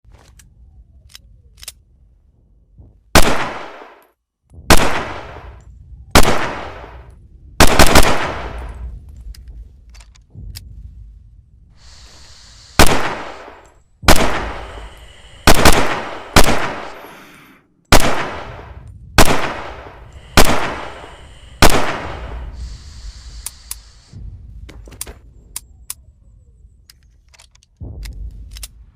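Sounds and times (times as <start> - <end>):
pistol shots: 3.2 - 4.0, 4.7 - 5.6, 6.2 - 7.0, 7.6 - 8.8, 12.8 - 14.8, 15.4 - 17.0, 17.9 - 22.5
faint clicks: 23.3 - 24.0.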